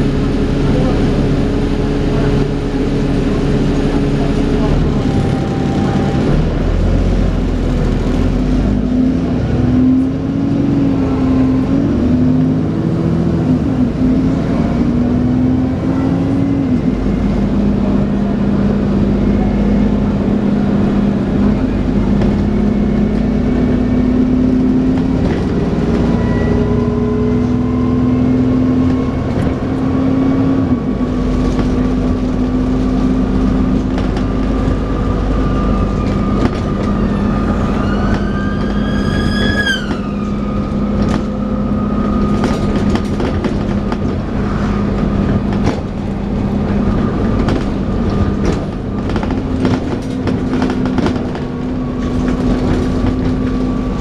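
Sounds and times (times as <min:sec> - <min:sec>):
bus engine whine: 0:00.0 - 0:54.0
bus body rattles and knocks: 0:16.2 - 0:54.0
rising squeal: 0:26.0 - 0:28.2, 0:34.7 - 0:42.8.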